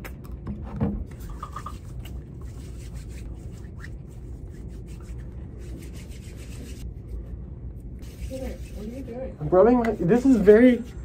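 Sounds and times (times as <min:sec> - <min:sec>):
hands rubbing together: 0:01.2 - 0:07.2, 0:08.0 - 0:09.2.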